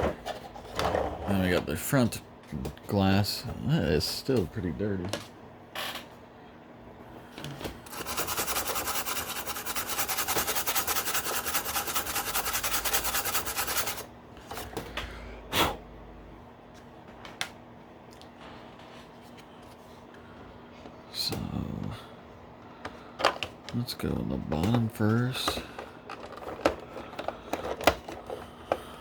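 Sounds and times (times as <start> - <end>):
rubbing on plastic: 7.9 - 14.1.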